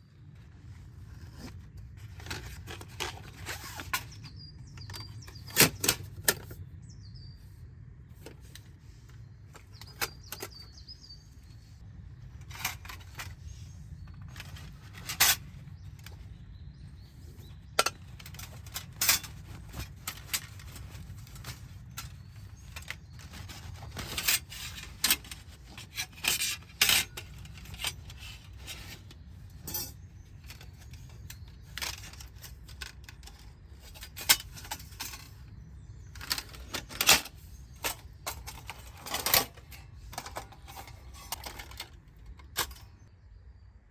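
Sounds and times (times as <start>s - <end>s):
low outdoor rumble: 0.0s - 43.9s
faint bird chirps: 6.5s - 7.8s, 9.0s - 12.3s
metal gear clinking: 29.6s - 30.0s.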